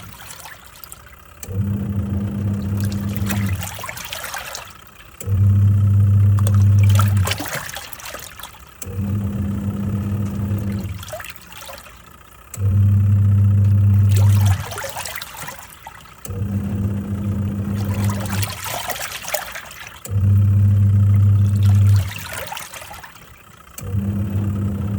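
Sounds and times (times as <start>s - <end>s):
water and clothes swishing: 0.0s - 1.3s, 2.5s - 5.2s, 6.4s - 8.8s, 10.2s - 12.1s, 13.9s - 16.3s, 17.5s - 20.2s, 21.1s - 23.4s
washing machine motor humming: 0.0s - 24.9s.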